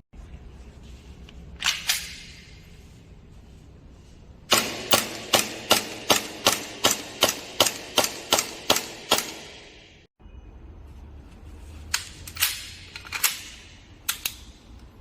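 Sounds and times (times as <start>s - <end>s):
airsoft gun shots: 4.5s - 9.9s.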